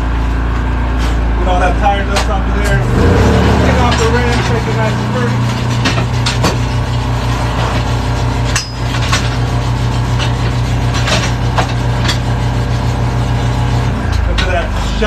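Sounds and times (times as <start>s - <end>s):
engine running: 0.0s - 15.0s
knocks and scraping on wheel rim: 3.7s - 14.7s.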